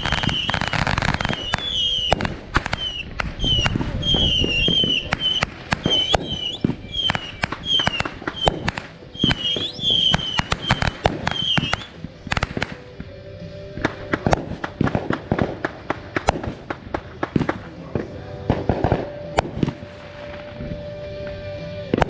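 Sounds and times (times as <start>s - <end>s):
high falling firework whistles: 0.0s - 12.0s
fireworks bangs and crackles: 0.0s - 21.2s.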